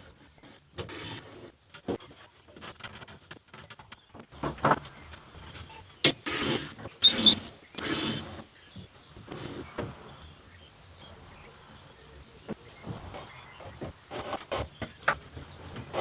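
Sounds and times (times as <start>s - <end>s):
scraping and rustling: 4.4s - 16.0s.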